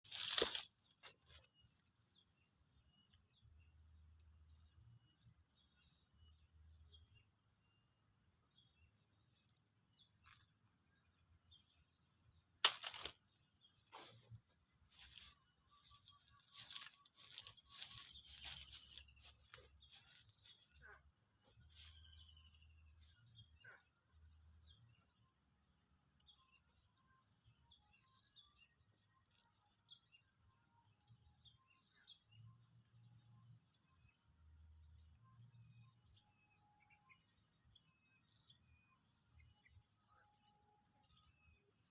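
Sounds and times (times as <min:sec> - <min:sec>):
faint bird chirps: 0:12.9 - 0:41.9.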